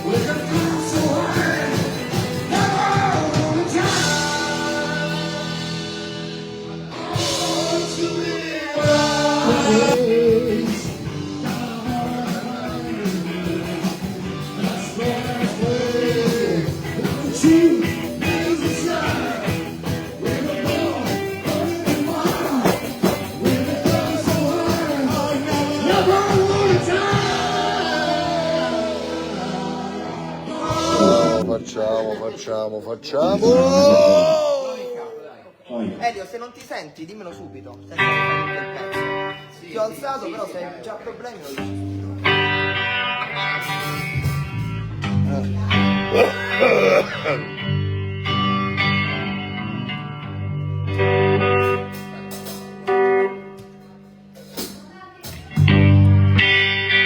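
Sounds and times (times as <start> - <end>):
live rock band playing: 0.0 - 31.7, 37.8 - 39.7, 41.4 - 57.0
person singing lead vocal: 0.0 - 32.3, 33.2 - 35.3, 45.4 - 47.6.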